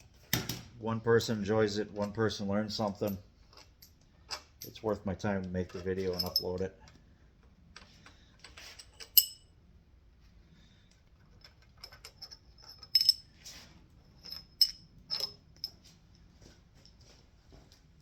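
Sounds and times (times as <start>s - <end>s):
metal tools clinking on metal: 1.9s - 7.0s, 7.8s - 9.5s, 11.2s - 13.5s, 14.1s - 15.9s.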